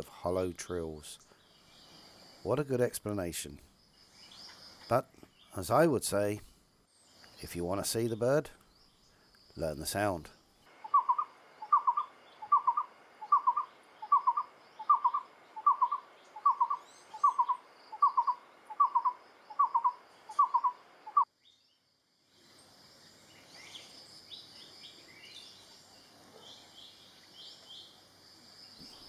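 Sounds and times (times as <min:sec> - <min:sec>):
bird hooting low notes: 0:10.7 - 0:21.2
faint high-pitched chirps: 0:10.7 - 0:21.7.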